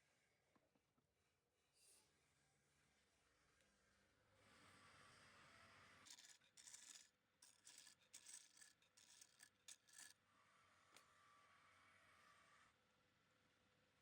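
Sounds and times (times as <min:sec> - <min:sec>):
scratchy rubbing strokes: 0:06.1 - 0:10.1.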